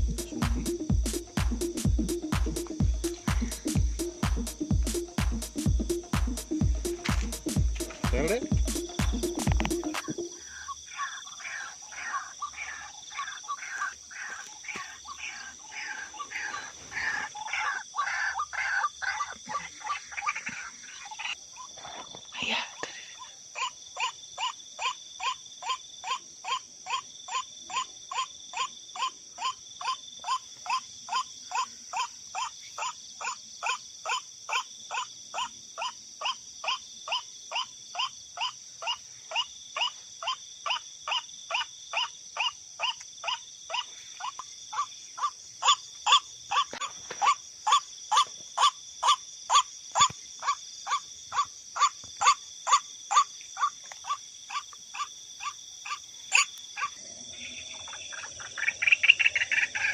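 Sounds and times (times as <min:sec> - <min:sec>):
bird call notes: 0:00.0 - 0:18.5
insects droning: 0:00.0 - 0:59.9.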